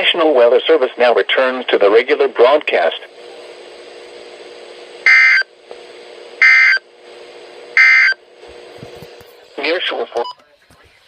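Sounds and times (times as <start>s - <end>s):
receiver low hum: 0.0s - 11.0s.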